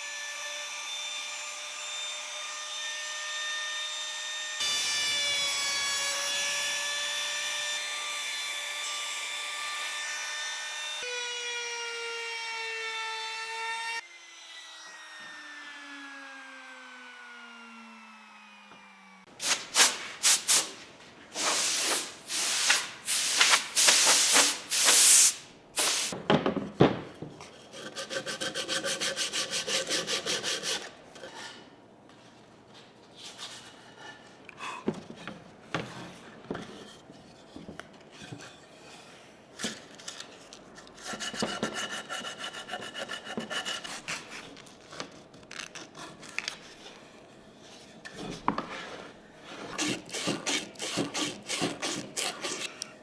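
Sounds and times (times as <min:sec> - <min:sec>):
sawing strokes on wood: 0:27.7 - 0:31.6, 0:41.0 - 0:44.6, 0:45.9 - 0:52.8
rhythmic scraping on wood: 0:47.5 - 0:52.8.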